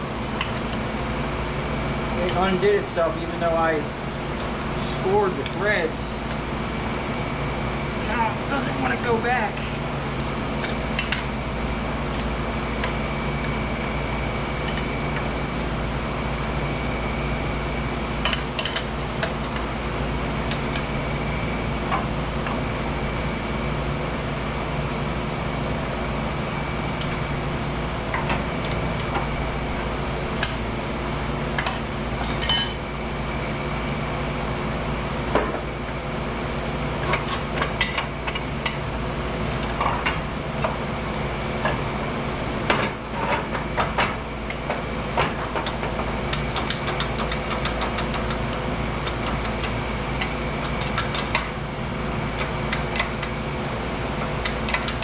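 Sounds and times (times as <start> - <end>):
steady machine hum: 0.0 - 55.0
hand tools tapping on steel: 45.2 - 48.4.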